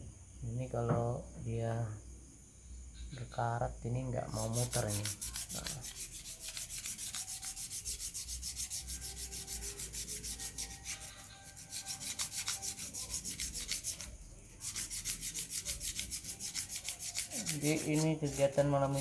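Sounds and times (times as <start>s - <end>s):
sandpaper rubbing on metal: 4.3s - 19.0s.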